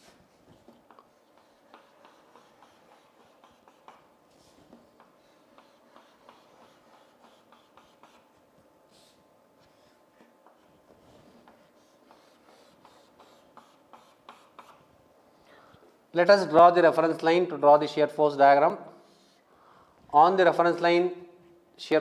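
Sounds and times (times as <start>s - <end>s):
pen tapping and scratching: 0.6s - 4.1s, 5.0s - 8.3s, 10.2s - 14.8s.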